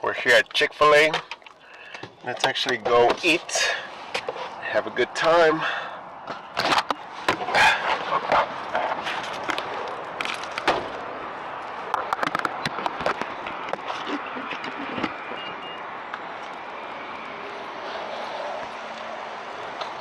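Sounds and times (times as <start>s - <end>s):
faint voices: 0.0s - 8.4s.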